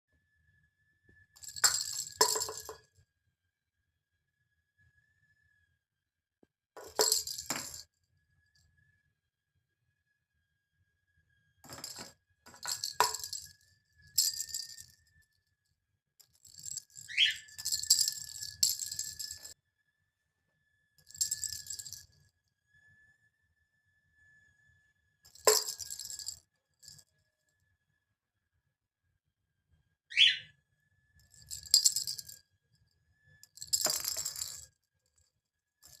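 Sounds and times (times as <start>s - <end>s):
rattle ball toy rattling: 1.4s - 2.8s, 6.8s - 7.8s, 11.7s - 15.0s, 16.2s - 19.6s, 21.0s - 22.1s, 25.3s - 26.4s, 31.3s - 32.4s, 33.4s - 34.7s
cockatiel chirp: 30.1s - 30.5s.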